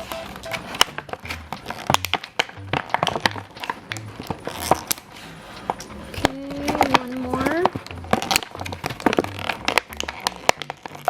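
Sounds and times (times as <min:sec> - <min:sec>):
plastic toy pieces clicking: 0:00.8 - 0:11.0.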